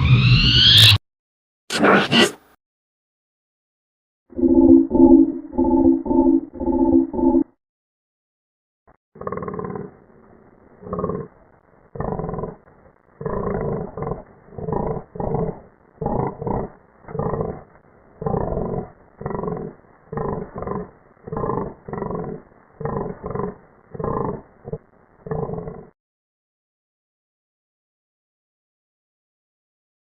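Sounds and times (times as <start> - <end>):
monster roars and growls: 13.2 - 25.9.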